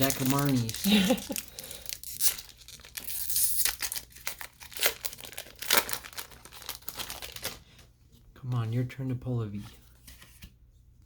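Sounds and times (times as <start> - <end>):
foil wrapper crinkling and tearing: 0.0 - 7.8.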